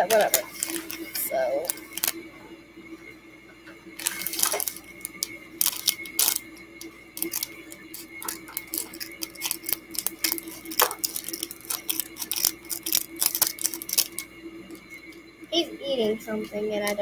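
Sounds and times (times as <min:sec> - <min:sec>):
plastic pieces clicking and crinkling: 0:00.0 - 0:02.2, 0:04.0 - 0:14.9
faint steady hum: 0:00.0 - 0:17.0.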